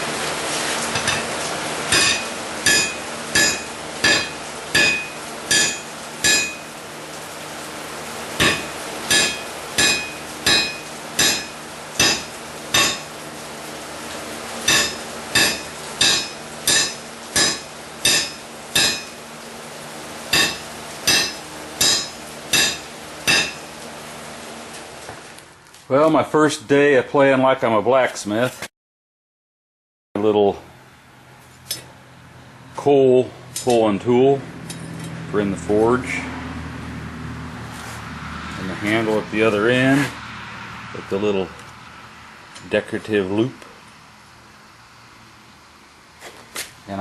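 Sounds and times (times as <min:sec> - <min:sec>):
hammer striking metal on anvil: 0:01.9 - 0:06.7, 0:08.4 - 0:13.1, 0:14.7 - 0:19.2, 0:20.3 - 0:23.7.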